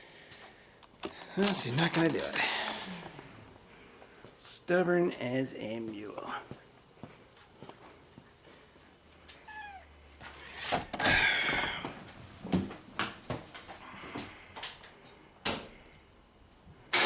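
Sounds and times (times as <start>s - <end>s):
cat meowing: 9.4s - 10.0s.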